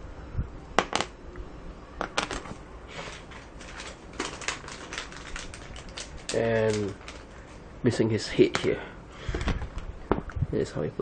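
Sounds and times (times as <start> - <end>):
plastic pieces clicking: 3.1 - 7.3.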